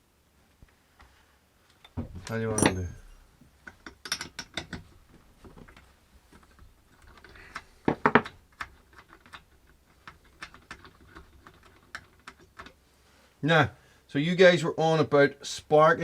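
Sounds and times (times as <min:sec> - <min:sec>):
hands handling small tools: 0:01.7 - 0:12.8.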